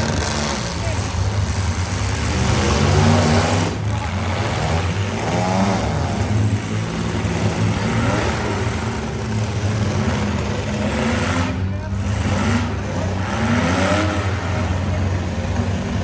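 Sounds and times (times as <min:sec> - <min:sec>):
car engines revving: 0:00.0 - 0:16.0.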